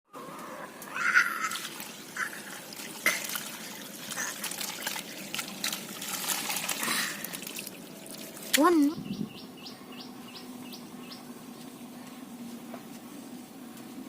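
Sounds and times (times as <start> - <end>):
water splashing and trickling: 0.9 - 9.0.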